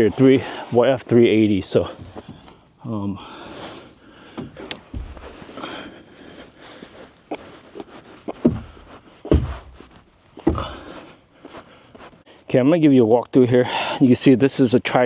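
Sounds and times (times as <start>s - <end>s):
dull thumps: 4.2s - 5.8s, 7.3s - 11.1s.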